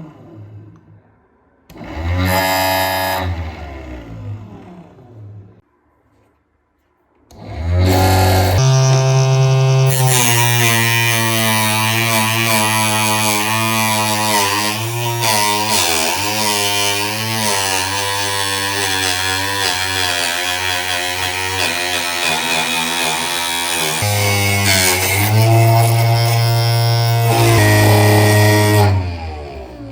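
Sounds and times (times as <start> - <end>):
table saw blade whine: 7.5 - 29.9.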